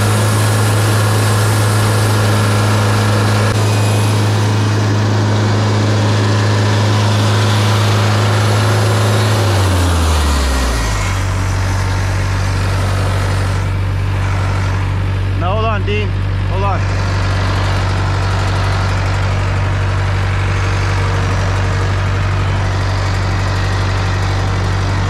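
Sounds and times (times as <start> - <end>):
bandsaw cutting log hiss: 0.0 - 15.9
sawmill engine running: 0.0 - 25.0.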